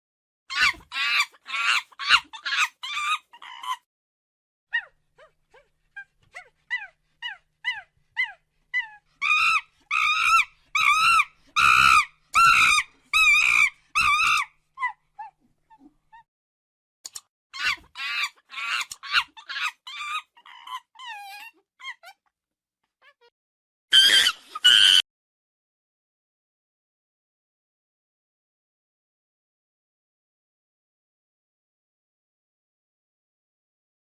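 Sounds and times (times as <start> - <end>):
monkey calls: 0.5 - 3.8, 6.4 - 15.4, 17.6 - 22.2, 23.9 - 25.0.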